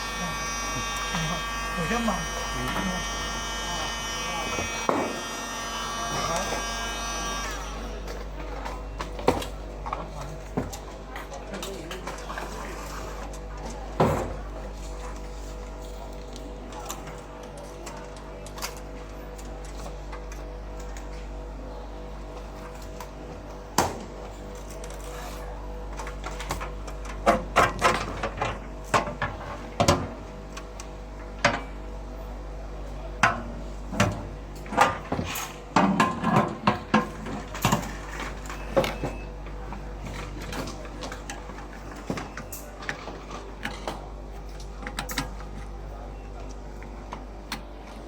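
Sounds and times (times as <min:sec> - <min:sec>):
electrical hum: 0:00.0 - 0:17.4.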